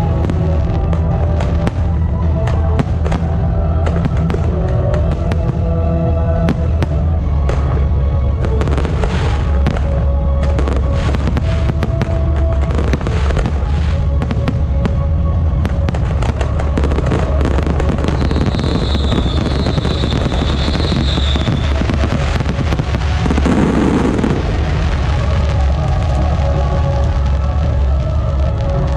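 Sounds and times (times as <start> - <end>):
fireworks cracking and popping: 0.0 - 5.8, 6.4 - 28.9
music: 0.0 - 28.9
high whistle: 17.1 - 22.5.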